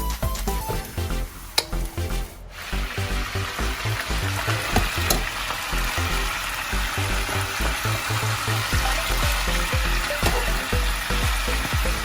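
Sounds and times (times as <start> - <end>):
meat sizzling in hot oil: 2.6 - 11.6.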